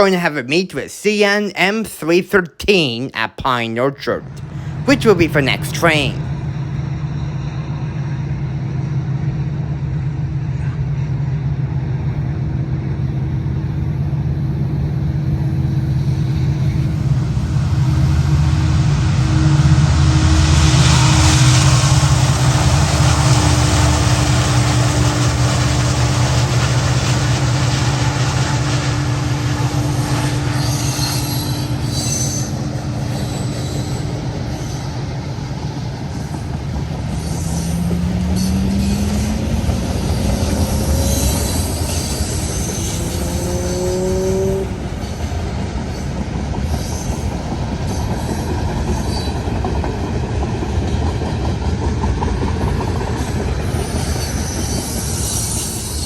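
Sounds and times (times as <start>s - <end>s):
diesel locomotive engine drone: 4.2s - 56.0s
rail noise from freight cars: 4.2s - 56.0s
high wheel squeals: 29.8s - 35.3s, 36.2s - 45.4s, 53.6s - 56.0s.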